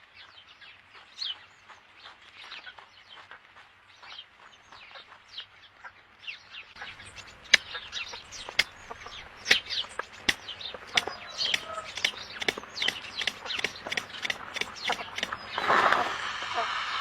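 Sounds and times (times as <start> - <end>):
birds chirping: 6.8 - 16.0
sharp taps: 7.4 - 15.6.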